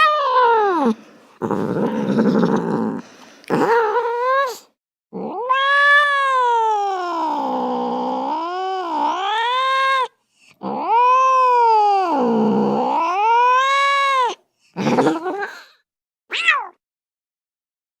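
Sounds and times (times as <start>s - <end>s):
cat meowing: 5.2s - 7.6s, 8.2s - 14.4s, 16.3s - 16.8s.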